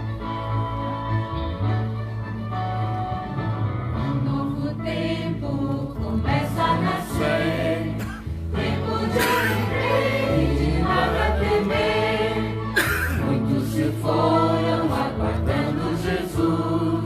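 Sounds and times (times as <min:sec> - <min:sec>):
instrumental accompaniment: 0:00.0 - 0:17.0
choir singing a hymn: 0:04.0 - 0:17.0.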